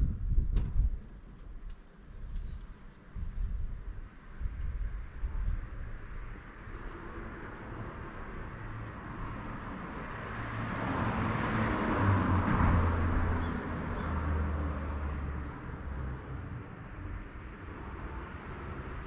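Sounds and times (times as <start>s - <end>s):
low engine hum: 0.0s - 19.0s
vehicle passing by: 6.2s - 19.0s.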